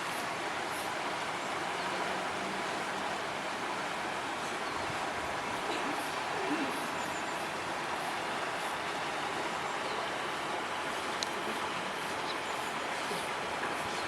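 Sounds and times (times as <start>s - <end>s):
distant traffic hum: 0.0s - 14.0s
faint tick: 11.2s - 11.4s.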